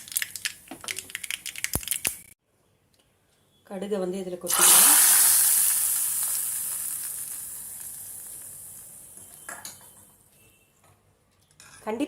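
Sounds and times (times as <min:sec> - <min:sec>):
hot ghee sizzling: 0:04.5 - 0:09.5.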